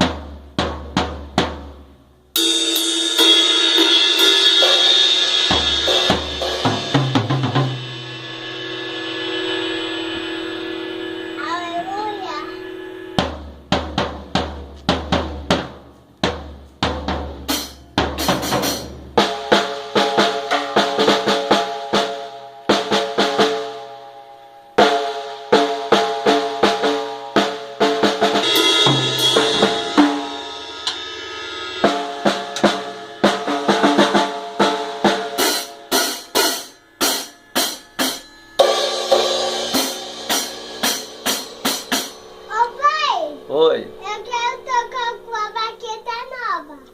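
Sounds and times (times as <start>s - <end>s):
drum hits: 0.0s - 23.9s, 24.8s - 45.4s
cymbal strikes ringing: 2.4s - 13.5s, 28.3s - 45.6s
sustained pitched tones: 9.6s - 13.3s.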